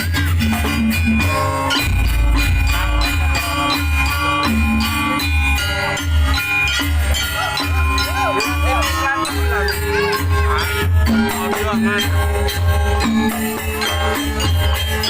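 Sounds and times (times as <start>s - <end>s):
deep steady drum beat: 0.0s - 5.6s
gamelan ensemble: 0.0s - 15.0s
ringing metallophone tones: 0.0s - 15.0s
sliding melody line: 0.6s - 6.1s.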